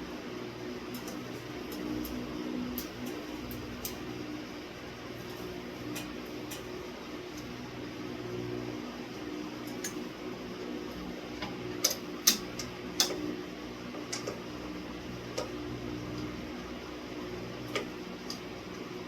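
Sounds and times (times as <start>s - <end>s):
steady low hum: 0.0s - 19.0s
metallic clicks and taps: 11.4s - 13.2s.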